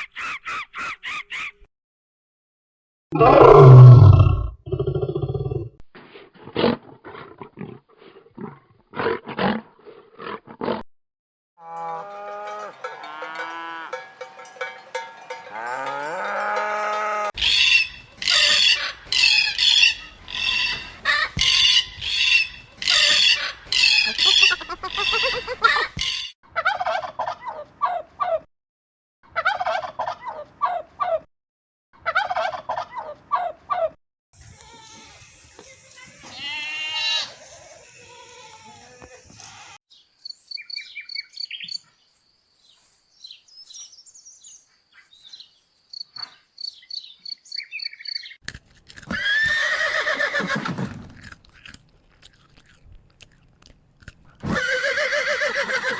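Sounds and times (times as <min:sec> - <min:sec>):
farm animal and poultry calls: 0:00.0 - 0:01.7, 0:15.5 - 0:28.5, 0:29.3 - 0:31.3, 0:32.0 - 0:39.8, 0:54.4 - 0:55.9.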